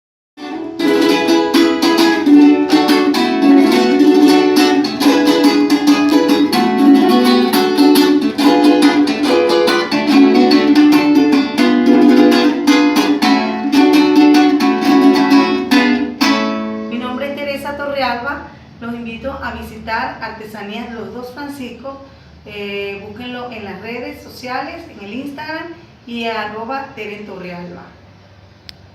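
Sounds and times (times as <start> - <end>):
cuatro strummed in fast chords: 0.4 - 17.2.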